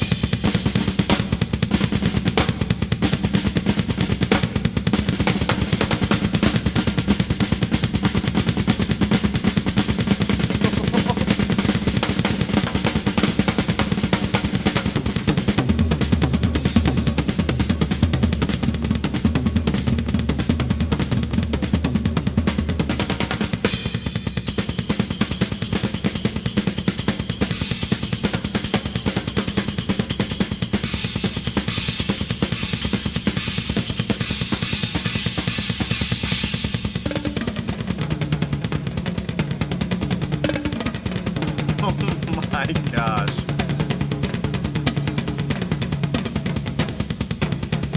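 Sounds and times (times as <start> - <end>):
drum rolls: 0.0 - 47.9
bass drum: 9.6 - 11.8.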